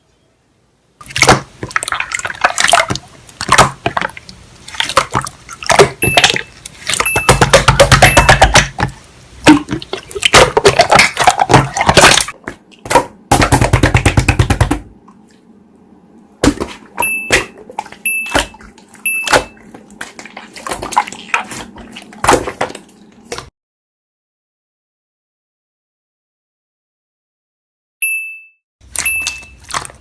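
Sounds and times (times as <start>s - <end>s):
slime squished by hand: 28.8s - 30.0s.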